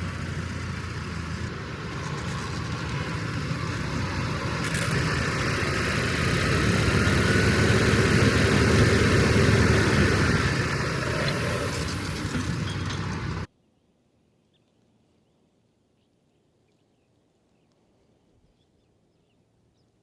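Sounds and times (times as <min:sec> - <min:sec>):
tractor engine running: 0:00.0 - 0:13.5.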